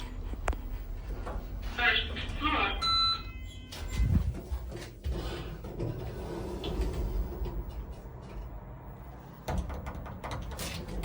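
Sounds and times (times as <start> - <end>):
low mechanical rumble: 3.9 - 11.0
lift doors sliding open: 4.8 - 11.0
clattering knocks: 9.4 - 11.0.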